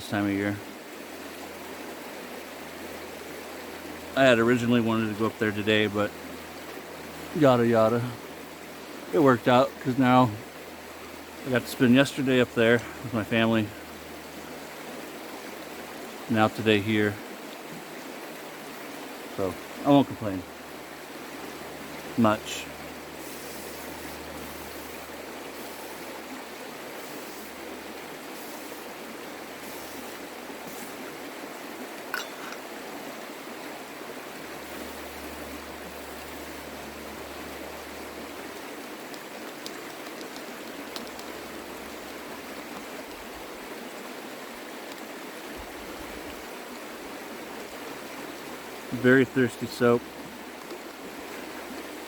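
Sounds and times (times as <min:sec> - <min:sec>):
creek rushing: 0:00.0 - 0:52.0
sharp clink: 0:32.2 - 0:32.6
faint ticks: 0:38.5 - 0:41.4, 0:50.5 - 0:51.0.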